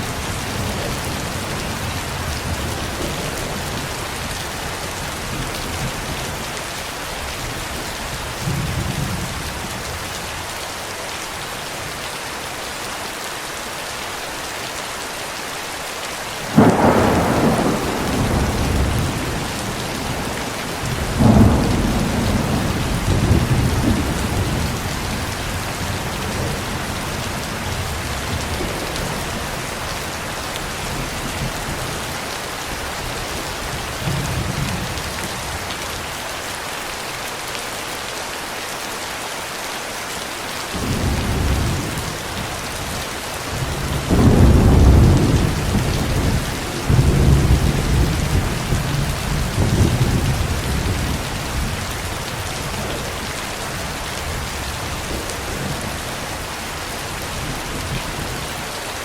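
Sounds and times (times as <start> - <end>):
steady rain falling: 0.0 - 59.0
thunder clap and rumble: 16.5 - 30.1, 40.8 - 53.2.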